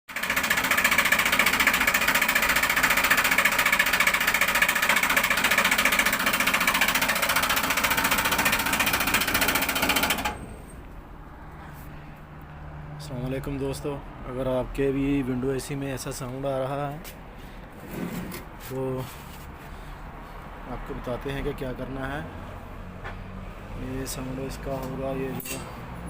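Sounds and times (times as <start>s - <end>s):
air conditioner fan rattling: 0.1s - 10.9s.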